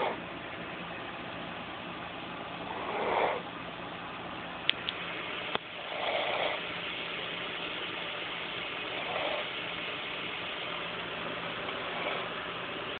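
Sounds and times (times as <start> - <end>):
person snoring: 2.7 - 3.4, 5.8 - 6.6, 11.8 - 12.3
steady hiss: 4.6 - 12.9.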